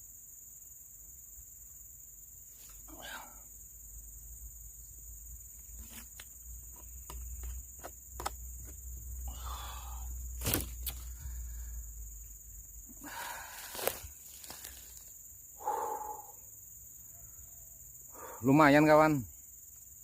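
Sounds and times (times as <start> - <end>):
crickets and insects chirping: 0.0 - 20.0
snaps and rustles in vegetation: 10.4 - 11.2, 13.2 - 15.2.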